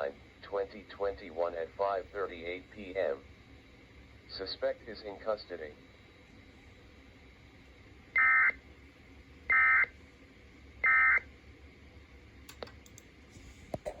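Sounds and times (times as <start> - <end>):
faint clicks: 12.5 - 13.1.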